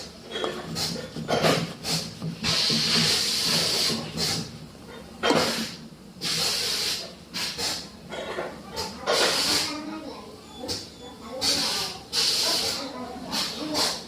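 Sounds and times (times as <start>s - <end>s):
hissing bursts: 1.8s - 4.5s, 5.4s - 7.9s, 9.1s - 9.8s, 11.4s - 14.0s.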